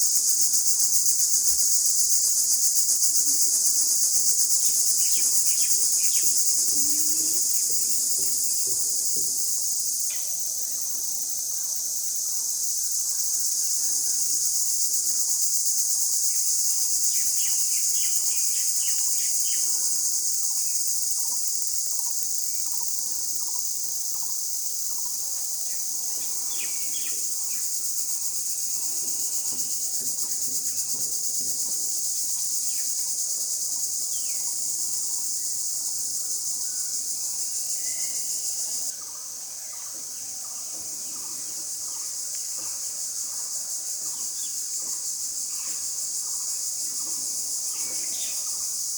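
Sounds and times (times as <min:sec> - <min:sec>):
high-pitched insect chorus: 0:00.0 - 0:48.9.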